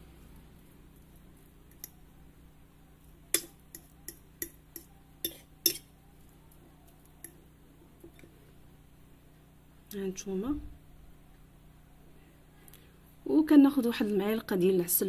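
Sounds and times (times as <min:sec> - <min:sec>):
metal fork clicking on dish: 0:03.3 - 0:05.9.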